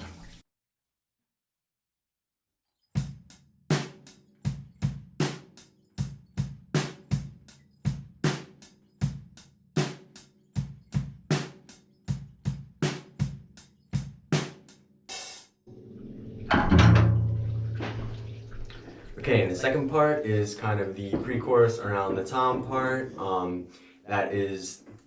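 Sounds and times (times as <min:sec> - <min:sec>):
acoustic drum kit rock groove: 0:03.0 - 0:15.5.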